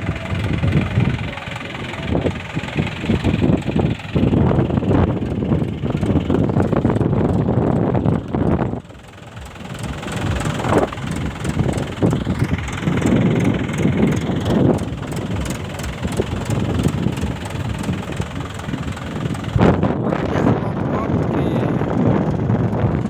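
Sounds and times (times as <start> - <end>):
tractor diesel engine running: 0.0 - 23.0.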